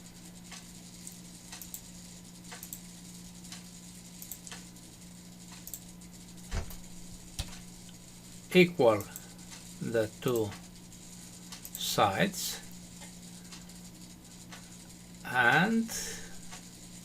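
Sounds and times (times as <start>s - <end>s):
steady low hum: 0.0s - 17.0s
computer mouse clicking: 0.5s - 1.9s, 2.5s - 2.8s, 4.2s - 4.7s, 5.5s - 5.9s.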